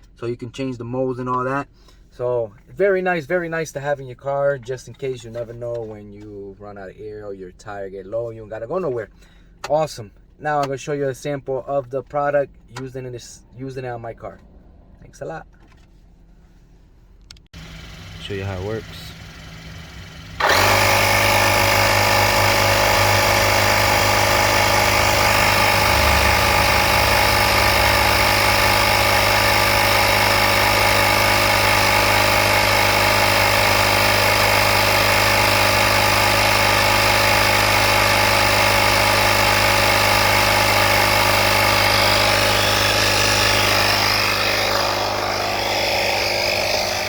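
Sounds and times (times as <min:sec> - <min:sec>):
electric air compressor droning: 0:17.6 - 0:47.0.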